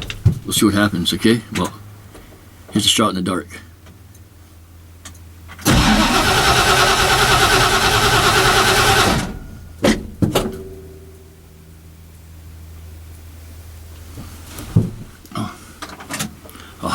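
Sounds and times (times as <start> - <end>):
starter motor cranking engine: 5.6 - 9.8.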